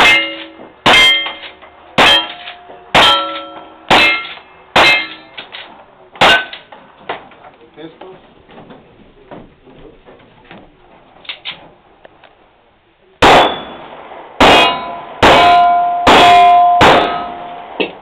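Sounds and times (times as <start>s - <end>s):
steel target ringing: 0.0s - 5.5s, 6.2s - 6.7s, 13.2s - 17.8s
pistol shots: 13.2s - 18.0s.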